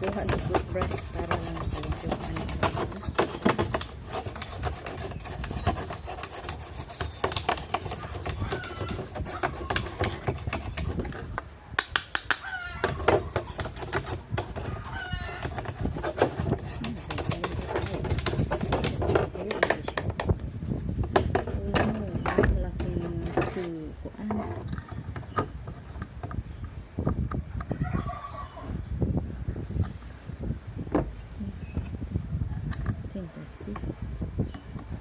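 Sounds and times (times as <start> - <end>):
toothbrush scrubbing metal parts: 0.0 - 11.4, 13.2 - 20.0.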